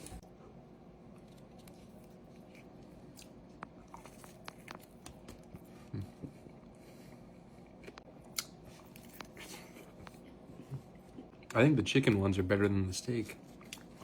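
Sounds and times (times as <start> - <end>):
person chewing crunchy food: 1.1 - 11.5, 13.5 - 14.0.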